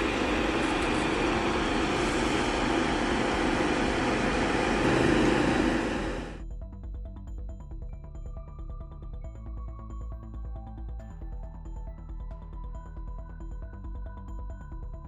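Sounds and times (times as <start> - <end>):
motor-like hum: 0.0 - 6.4.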